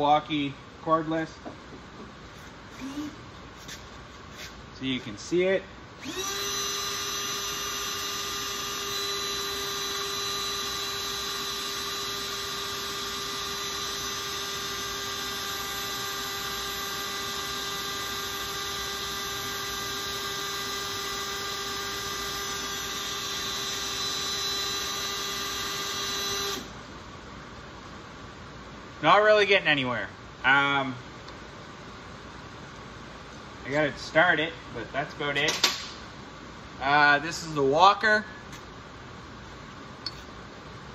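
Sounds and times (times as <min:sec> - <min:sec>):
cordless drill bit grinding steel: 0:06.0 - 0:26.6.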